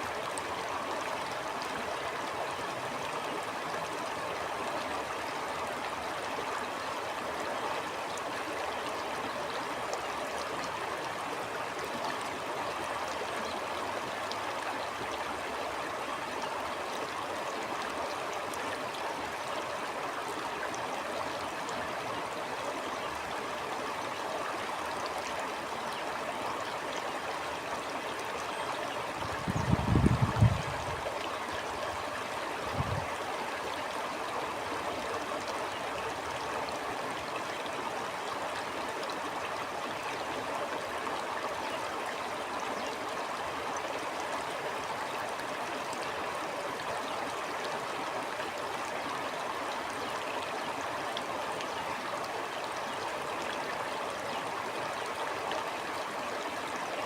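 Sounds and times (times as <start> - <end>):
stream of water flowing: 0.0 - 57.0
wind buffeting microphone: 29.2 - 31.1, 32.7 - 33.1.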